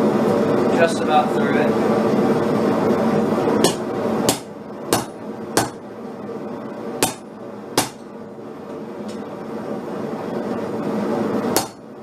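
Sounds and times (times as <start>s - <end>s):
hammer striking hot steel bar: 3.6s - 5.8s, 7.0s - 8.1s, 11.6s - 11.8s.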